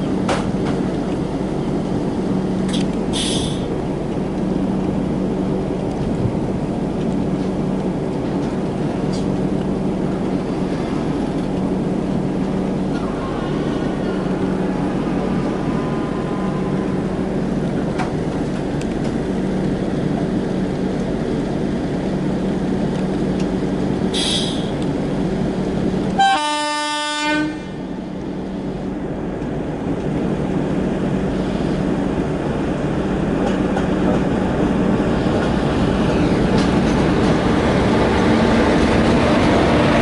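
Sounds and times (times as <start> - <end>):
train rumbling along track: 0.0 - 40.0
locomotive horn blast: 15.5 - 17.1, 26.2 - 27.8.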